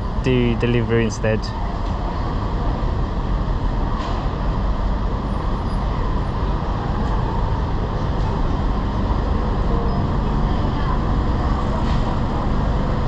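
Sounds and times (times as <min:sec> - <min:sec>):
city traffic rumble: 0:00.0 - 0:13.0.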